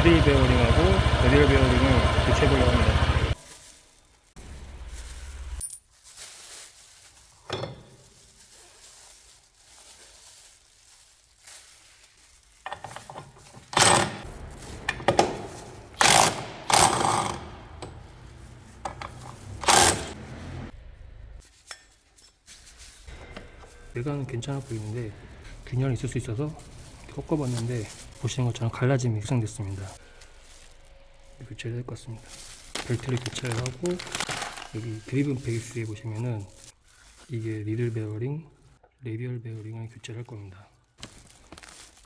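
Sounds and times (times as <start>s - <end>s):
metal tools clinking: 21.5s - 24.0s.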